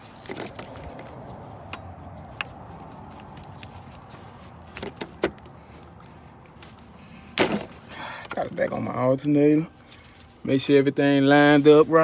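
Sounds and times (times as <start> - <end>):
sharp clicks and metallic clinks: 0.0 - 4.0.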